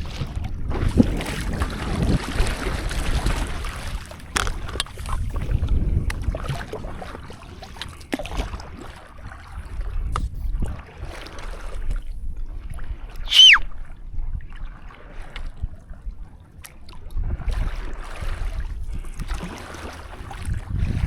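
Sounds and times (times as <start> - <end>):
paddle strokes splashing in water: 0.0 - 13.9, 14.5 - 21.0
wind rumble on microphone: 0.0 - 21.0
high squeal falling in pitch: 13.3 - 13.6.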